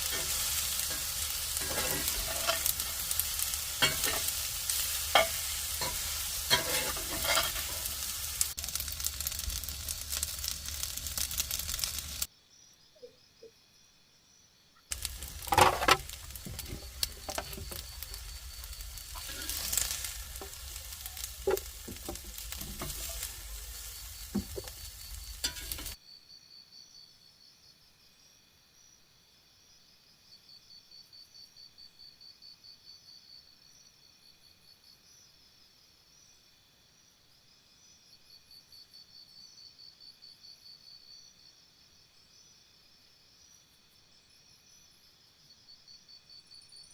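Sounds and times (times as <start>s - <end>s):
stirring clicks and scrapes: 0.0s - 3.2s, 3.8s - 12.3s, 14.9s - 26.0s
food sizzling in a skillet: 0.0s - 12.3s, 14.9s - 26.0s
insects chirping: 0.0s - 46.9s.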